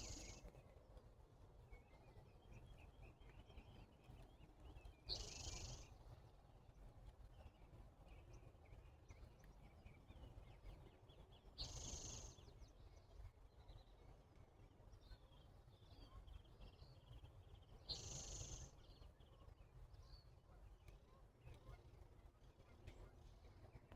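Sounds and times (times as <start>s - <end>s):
small birds chirping: 0.0s - 0.4s.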